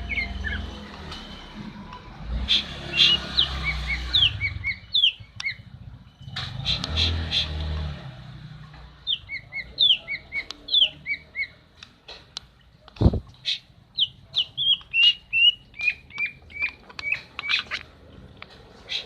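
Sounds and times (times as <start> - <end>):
bird chirping: 0.0 - 1.5, 2.4 - 7.6, 9.0 - 11.7, 13.3 - 17.9.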